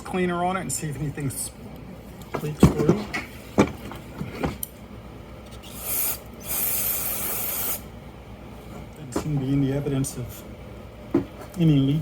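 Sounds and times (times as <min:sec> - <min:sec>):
aerosol can spraying: 0:05.7 - 0:07.8.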